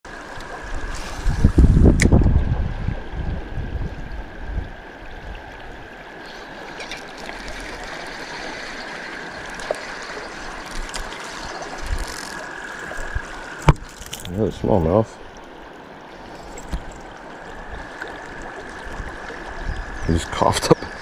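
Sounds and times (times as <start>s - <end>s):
creek water flowing: 0.0s - 21.0s.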